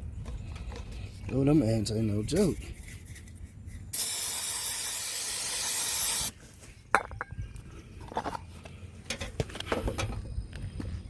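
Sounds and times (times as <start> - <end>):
aerosol spray hissing: 4.0 - 6.3.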